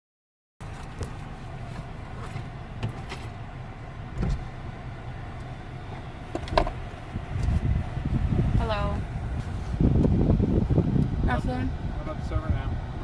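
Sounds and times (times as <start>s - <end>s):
car engine idling: 0.6s - 13.0s
sharp clicks and knocks: 6.3s - 6.8s.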